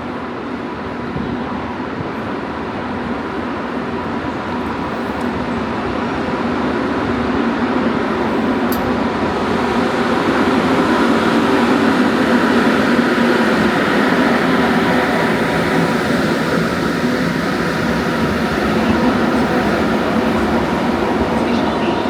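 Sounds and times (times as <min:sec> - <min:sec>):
train rumbling: 0:00.0 - 0:22.0.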